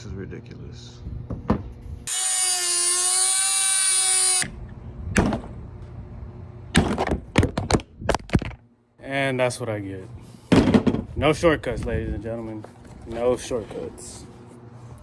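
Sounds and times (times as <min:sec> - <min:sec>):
power grinder whining: 0:02.1 - 0:04.5.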